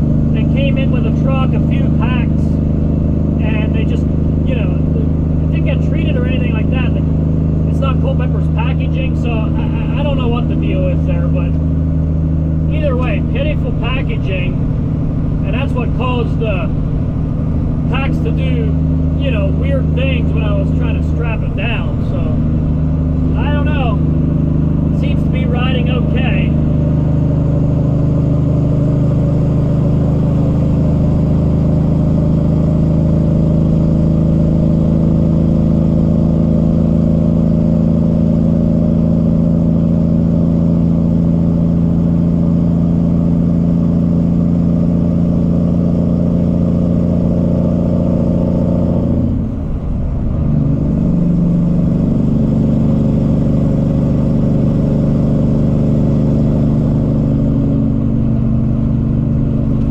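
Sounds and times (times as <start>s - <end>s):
diesel truck engine cruising: 0.0s - 59.9s.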